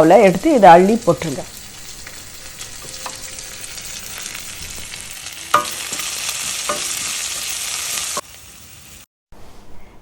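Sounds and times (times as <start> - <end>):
onions sizzling in hot oil: 0.0 - 9.1
metal spoon clanking on pan: 2.0 - 4.2, 5.5 - 7.3.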